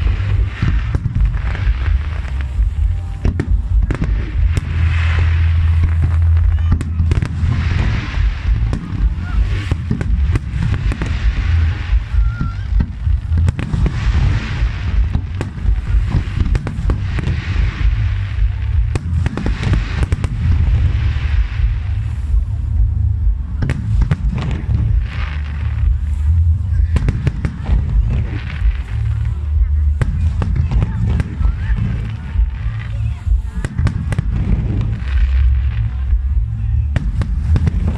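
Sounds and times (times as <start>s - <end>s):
fireworks booming: 0.0s - 37.9s
fireworks crackling: 0.0s - 37.9s.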